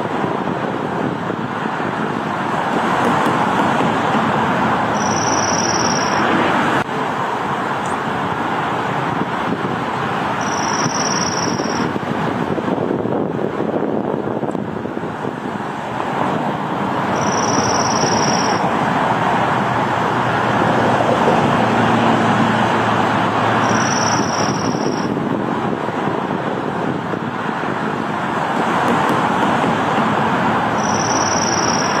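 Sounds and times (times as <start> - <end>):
road traffic noise: 0.0 - 32.0
bird high trill: 4.9 - 6.3, 10.4 - 11.9, 17.1 - 18.6, 23.6 - 25.1, 30.8 - 32.0.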